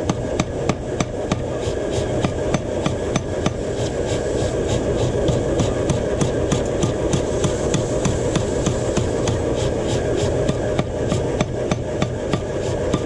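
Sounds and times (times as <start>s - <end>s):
hammer striking hot steel: 0.0s - 13.0s.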